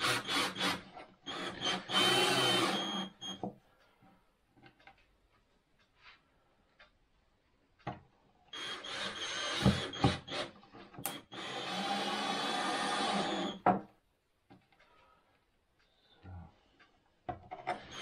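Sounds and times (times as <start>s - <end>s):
power tool working wood: 0.0s - 3.2s, 11.3s - 13.6s.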